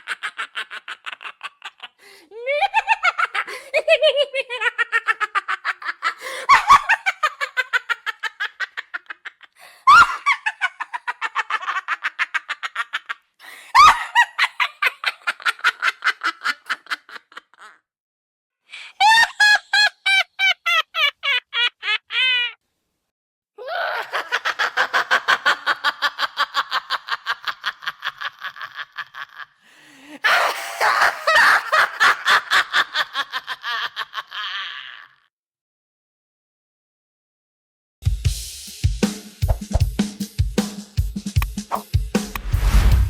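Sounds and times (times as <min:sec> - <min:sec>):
high-pitched cackling laughter: 0:00.0 - 0:17.9, 0:18.9 - 0:22.6, 0:23.6 - 0:29.6, 0:30.2 - 0:35.3.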